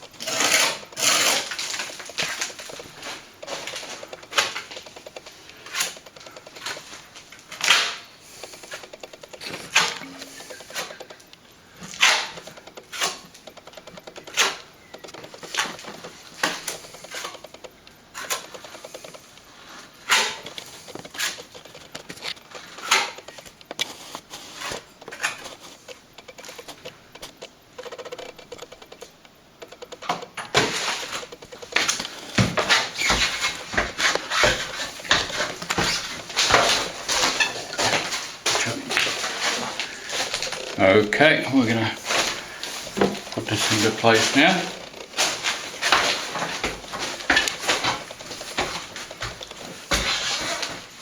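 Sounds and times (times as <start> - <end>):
tool scraping strokes: 0.1 - 6.9.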